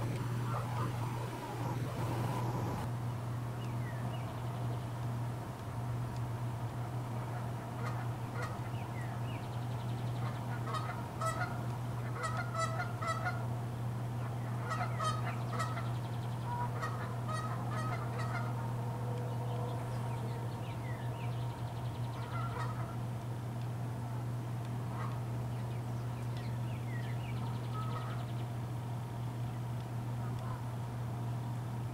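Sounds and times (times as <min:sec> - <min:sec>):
geese honking: 0:00.0 - 0:02.9, 0:07.2 - 0:08.9, 0:10.2 - 0:13.5, 0:14.1 - 0:23.2, 0:24.8 - 0:25.4, 0:27.4 - 0:28.4, 0:30.2 - 0:30.7
steady low hum: 0:00.0 - 0:31.9.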